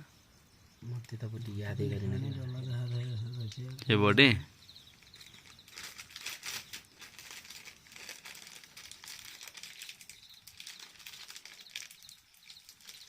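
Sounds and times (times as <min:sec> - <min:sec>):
faint insects chirping: 0:00.0 - 0:13.0
crinkling and rustling: 0:04.9 - 0:13.0.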